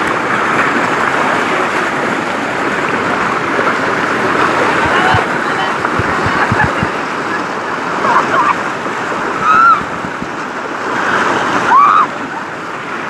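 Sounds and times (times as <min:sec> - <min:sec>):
rushing water: 0:00.0 - 0:13.0
low thumps: 0:04.5 - 0:07.0, 0:09.7 - 0:10.4
high shouts or whoops: 0:09.4 - 0:09.9, 0:11.6 - 0:12.2.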